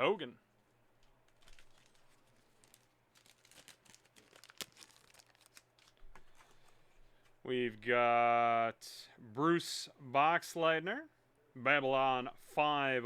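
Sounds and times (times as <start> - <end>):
card wrappers crinkling: 1.0 - 6.8.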